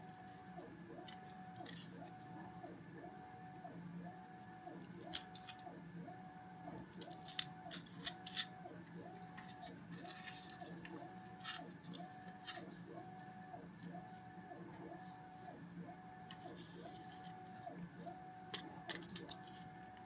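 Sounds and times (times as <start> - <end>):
small parts clicking and tapping: 5.0 - 5.7, 6.9 - 8.6, 18.5 - 20.0.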